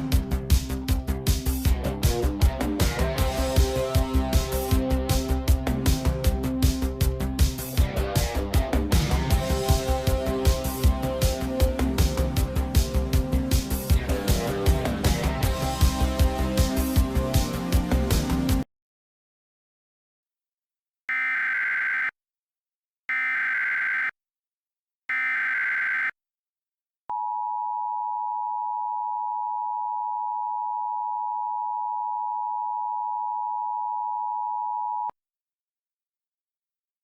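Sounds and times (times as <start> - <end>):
digital data warble bursts: 21.1 - 22.1, 23.1 - 24.1, 25.1 - 26.1
two-tone attention signal: 21.1 - 22.1, 23.1 - 24.1, 25.1 - 26.1.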